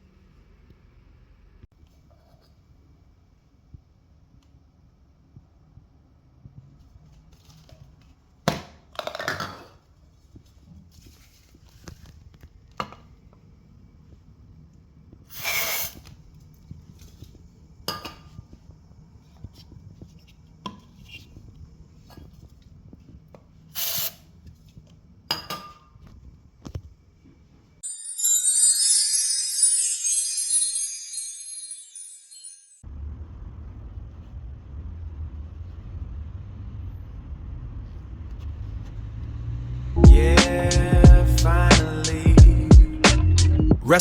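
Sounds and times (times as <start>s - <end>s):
bright jingling music: 27.8s - 32.8s, 40.0s - 44.0s.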